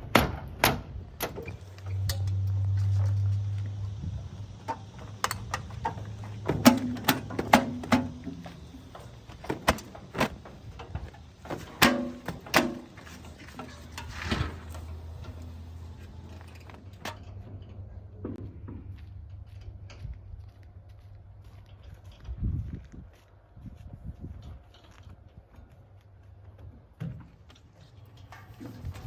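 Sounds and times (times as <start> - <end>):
diesel engine running: 1.4 - 19.9
sharp metal clanks: 4.6 - 15.4.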